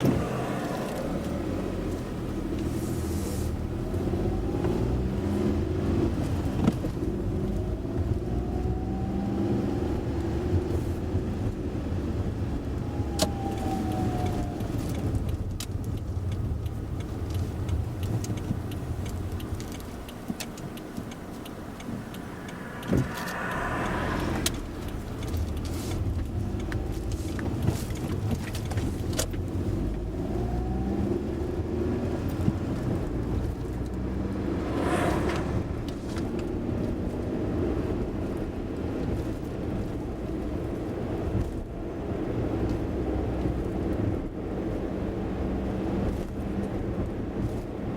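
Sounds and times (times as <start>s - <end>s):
car engine and road rumble: 0.0s - 47.9s
sharp clicks and rattles: 13.9s - 29.5s.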